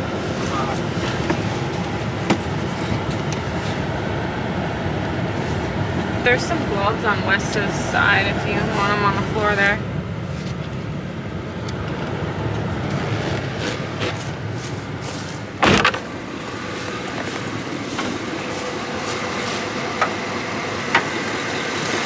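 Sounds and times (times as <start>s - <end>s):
truck engine idling: 0.0s - 22.0s
loud thump: 15.6s - 16.1s.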